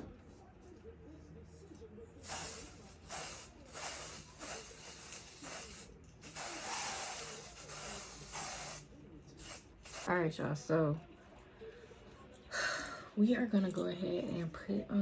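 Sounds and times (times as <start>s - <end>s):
aerosol can spraying: 2.2s - 10.1s.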